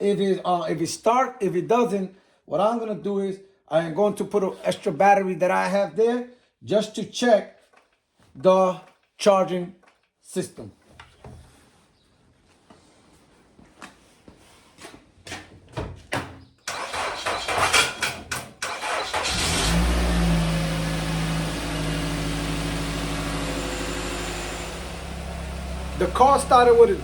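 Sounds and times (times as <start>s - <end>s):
car engine cranking and starting: 16.7s - 27.0s
car engine idling: 18.8s - 27.0s.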